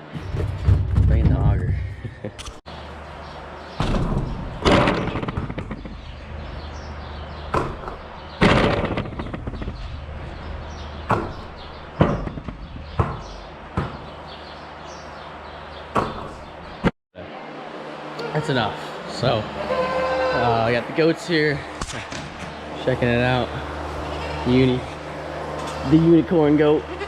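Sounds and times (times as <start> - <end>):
sharp bangs and knocks: 0.0 - 2.6, 3.8 - 6.5, 7.4 - 14.4, 15.9 - 16.9
steady low hum: 0.0 - 27.0.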